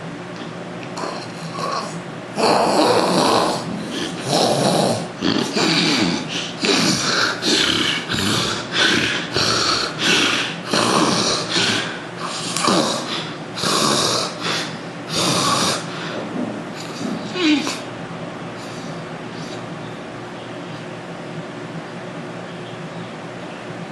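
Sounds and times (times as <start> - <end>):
man snoring loudly: 1.0 - 16.2.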